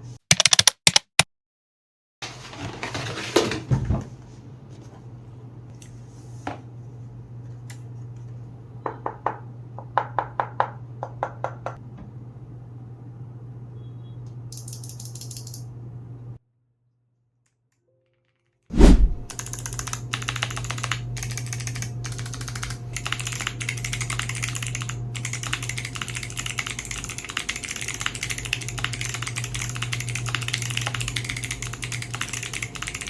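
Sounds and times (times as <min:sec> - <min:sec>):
keyboard key clicks: 0:00.3 - 0:01.1
steady low hum: 0:18.7 - 0:33.0.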